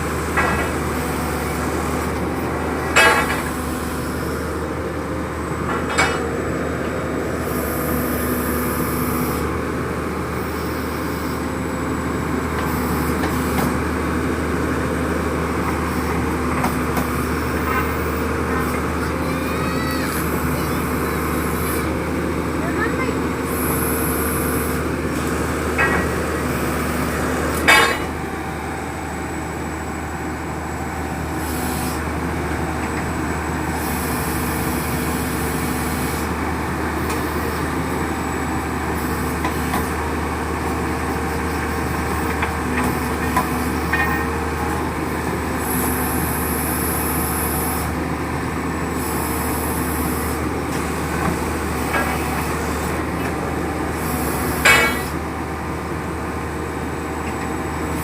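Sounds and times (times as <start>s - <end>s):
drilling rig engine and hydraulics: 0.0s - 58.0s
sharp metal clanks: 27.6s - 28.2s, 54.6s - 55.2s.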